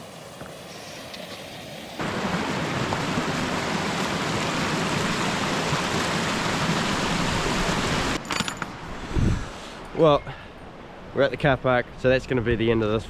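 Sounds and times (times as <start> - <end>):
stream water rushing: 0.0 - 9.1.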